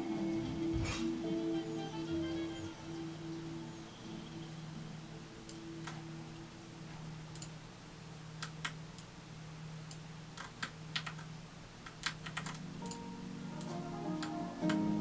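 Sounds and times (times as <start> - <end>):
typing on a keyboard: 9.9 - 13.0.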